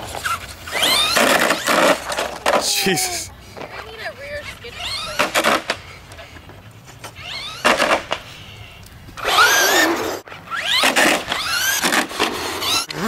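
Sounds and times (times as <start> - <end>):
tyres spinning: 0.0 - 13.0
electric rc car motor whining: 0.2 - 2.1, 4.4 - 5.7, 7.0 - 13.0.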